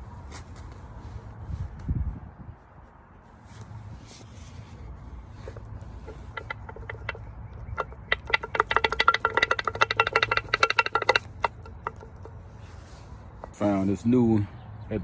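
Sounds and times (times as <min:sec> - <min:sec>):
metal striking metal: 0:06.0 - 0:12.3.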